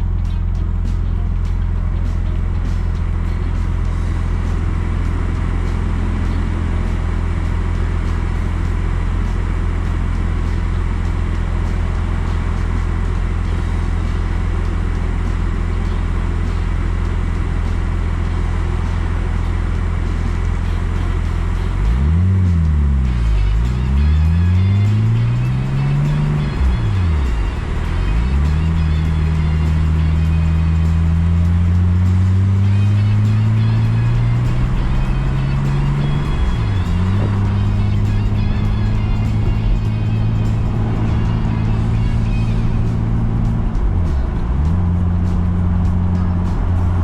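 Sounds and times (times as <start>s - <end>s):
car engine and road noise: 0.0s - 47.0s.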